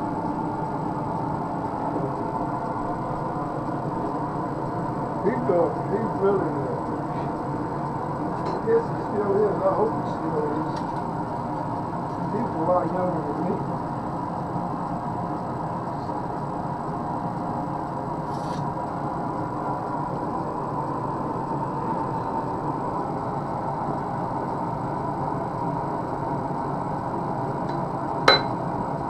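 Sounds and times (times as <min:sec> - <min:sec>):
forge droning: 0:00.0 - 0:29.0
sharp metallic clink: 0:28.3 - 0:28.6.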